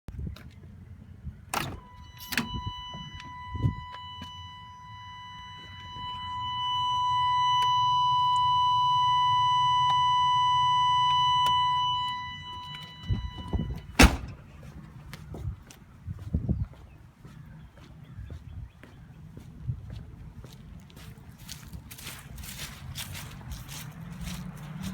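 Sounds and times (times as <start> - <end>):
electronic warning chime tone: 1.8 - 14.0.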